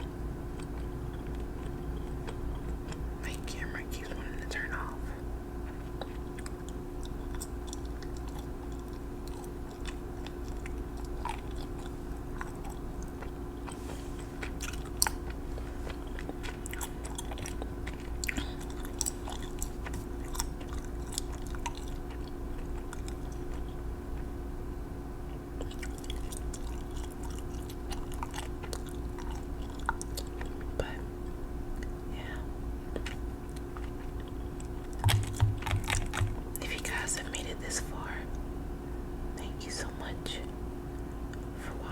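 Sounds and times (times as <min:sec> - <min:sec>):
low electrical hum: 0:00.0 - 0:41.9
small clicks taps and crackles: 0:05.6 - 0:13.8, 0:32.9 - 0:37.5.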